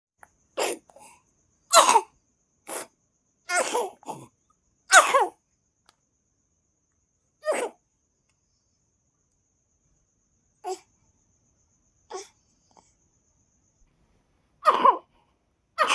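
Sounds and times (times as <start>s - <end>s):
person coughing hard: 1.7s - 2.1s, 3.5s - 4.3s, 4.9s - 5.4s, 14.6s - 15.1s.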